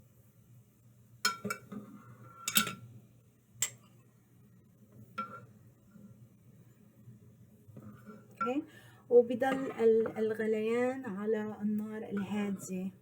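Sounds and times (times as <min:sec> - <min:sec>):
spoon clinking against a pot: 0:01.2 - 0:01.7, 0:02.4 - 0:02.8.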